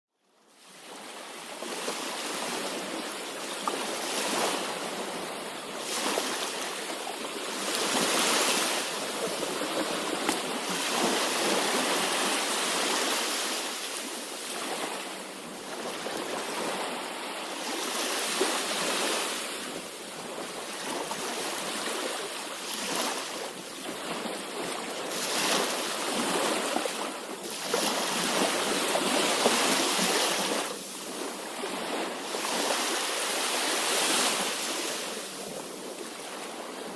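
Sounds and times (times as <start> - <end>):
surf rushing: 4.0 - 15.0.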